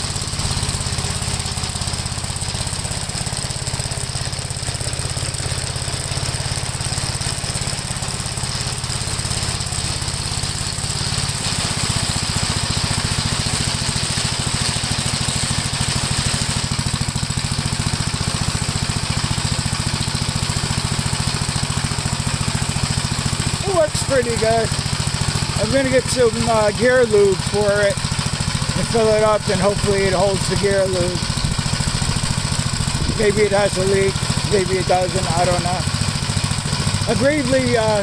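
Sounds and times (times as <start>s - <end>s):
tractor engine running: 0.0s - 38.0s.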